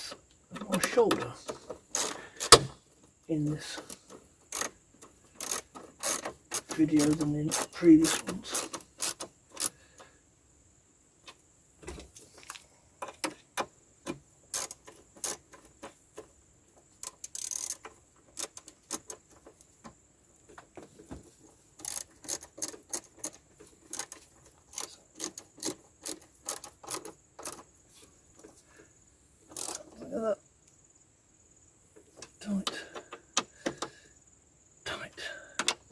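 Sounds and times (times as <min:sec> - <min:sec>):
metal parts clicking and clinking: 0:00.5 - 0:02.7, 0:05.4 - 0:09.8, 0:17.0 - 0:19.4, 0:21.8 - 0:27.7, 0:29.5 - 0:30.1.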